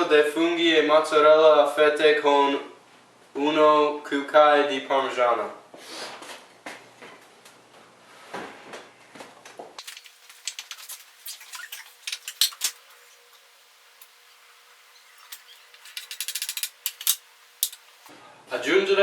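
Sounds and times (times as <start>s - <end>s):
faint steady hum: 9.8s - 18.4s.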